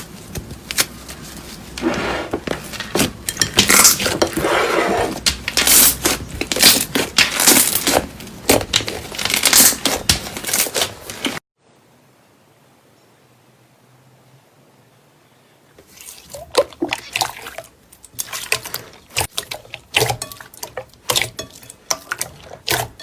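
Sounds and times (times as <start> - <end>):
slime squishing: 2.5 - 11.4, 15.8 - 23.0.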